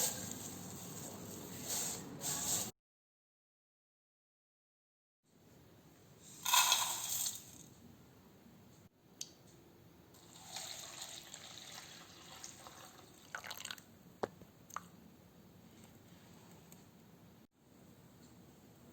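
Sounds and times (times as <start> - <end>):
water pouring and splashing: 10.3 - 13.8.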